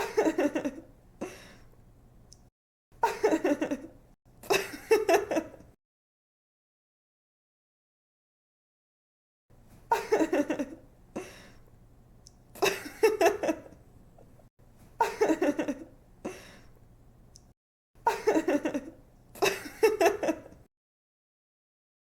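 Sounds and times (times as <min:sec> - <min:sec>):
woman giggling and laughing: 0:00.0 - 0:00.9, 0:03.0 - 0:05.7, 0:09.9 - 0:10.8, 0:12.6 - 0:13.8, 0:15.0 - 0:15.9, 0:18.1 - 0:20.7.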